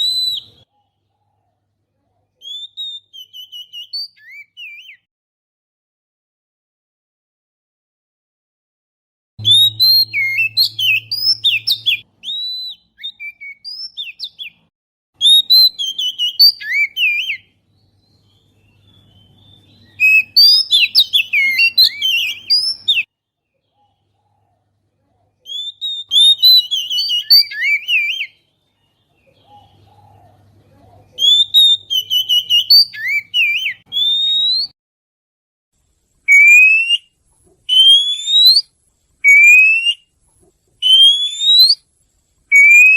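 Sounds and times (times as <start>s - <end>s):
bird song whistles and chirps: 0.0s - 0.9s, 2.4s - 5.1s, 9.4s - 24.6s, 25.4s - 30.4s, 31.1s - 34.8s, 36.3s - 40.1s, 40.8s - 41.9s, 42.5s - 42.9s.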